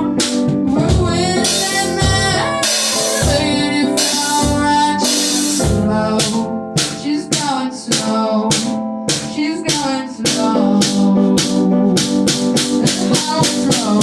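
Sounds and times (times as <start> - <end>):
rock band playing: 0.0 - 7.1
steady drum beat: 0.0 - 14.0.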